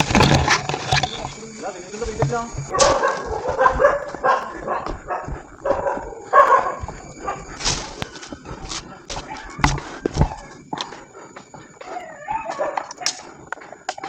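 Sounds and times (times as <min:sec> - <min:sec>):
dog barking and yelping: 0:02.7 - 0:13.5.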